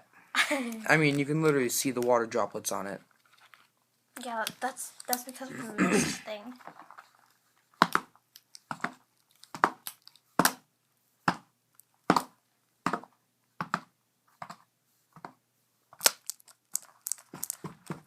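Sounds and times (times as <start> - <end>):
tablet parts clicking: 7.8 - 10.6, 16.0 - 18.0.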